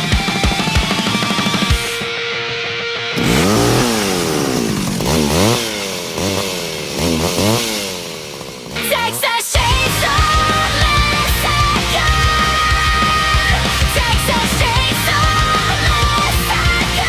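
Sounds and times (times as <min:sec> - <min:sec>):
band playing: 0:00.0 - 0:02.6, 0:09.6 - 0:17.0
chainsaw revving: 0:03.2 - 0:17.0.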